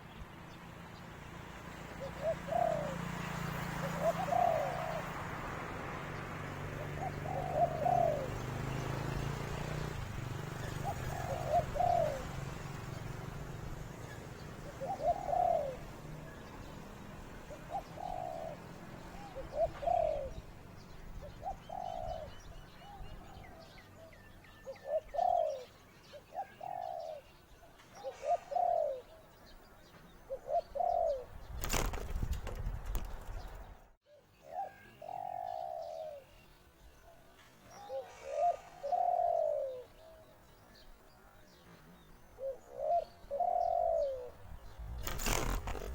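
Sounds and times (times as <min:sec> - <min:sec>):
small birds chirping: 0:00.0 - 0:45.9
dove cooing: 0:01.9 - 0:05.4, 0:06.5 - 0:29.3, 0:30.3 - 0:32.0, 0:34.4 - 0:36.4, 0:37.0 - 0:40.3, 0:42.4 - 0:45.9
loud rustle: 0:31.5 - 0:33.8, 0:44.7 - 0:45.9.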